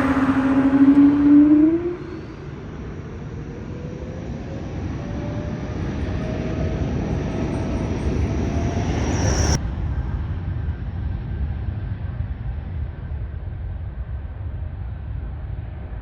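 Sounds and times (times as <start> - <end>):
jet engines rumbling and whining: 0.0 - 9.6.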